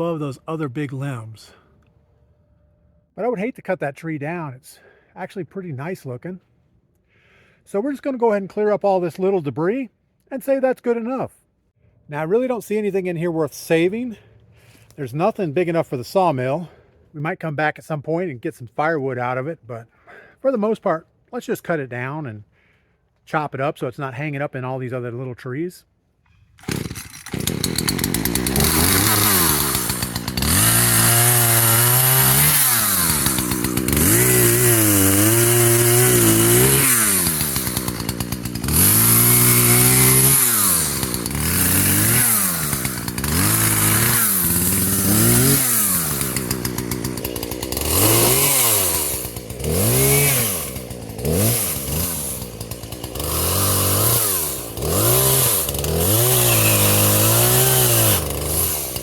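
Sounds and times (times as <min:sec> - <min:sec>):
chainsaw revving and cutting: 0:26.6 - 0:59.0.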